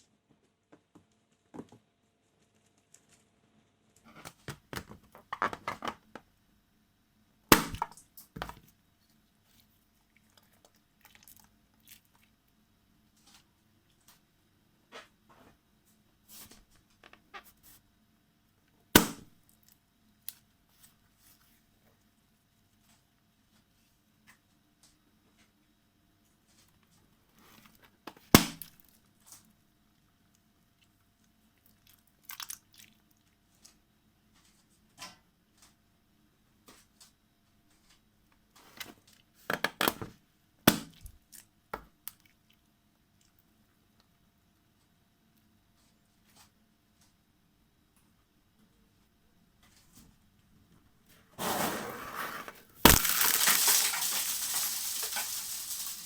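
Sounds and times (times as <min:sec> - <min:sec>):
balloon popping: 0:52.8 - 0:56.0.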